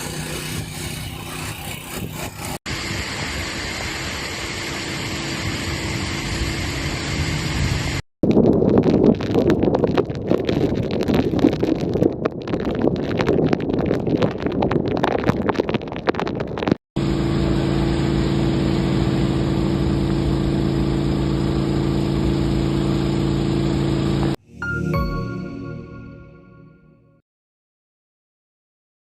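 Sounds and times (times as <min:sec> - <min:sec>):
vehicle engine droning: 0:00.0 - 0:02.6, 0:17.0 - 0:24.4
wind and rain on microphone: 0:00.1 - 0:16.8.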